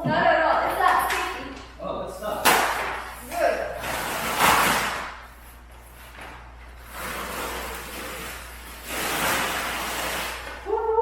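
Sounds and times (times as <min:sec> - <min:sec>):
wallpaper ripping off a wall: 0:03.8 - 0:05.2, 0:06.8 - 0:10.7.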